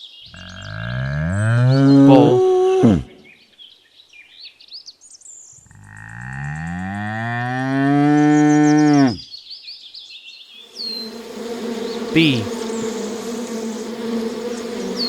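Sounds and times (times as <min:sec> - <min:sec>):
bull mooing: 0:00.3 - 0:03.2, 0:05.7 - 0:09.2.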